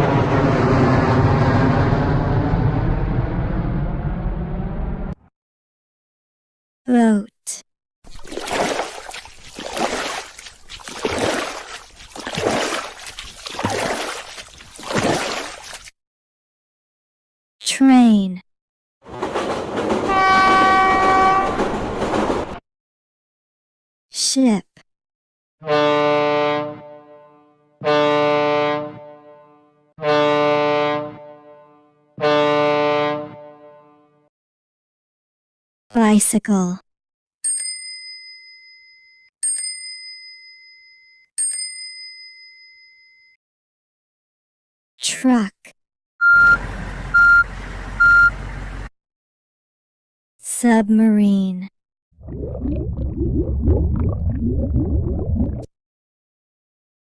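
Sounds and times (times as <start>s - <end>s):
water sloshing against boat: 8.1s - 15.9s
deep ship's horn blasts: 20.0s - 21.7s, 25.6s - 34.2s.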